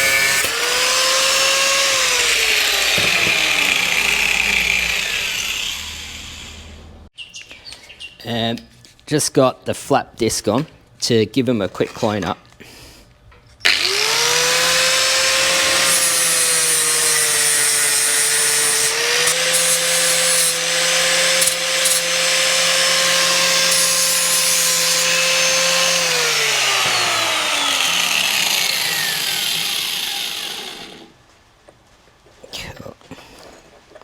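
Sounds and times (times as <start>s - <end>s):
angle grinder grinding metal: 0.0s - 6.8s, 13.7s - 31.2s.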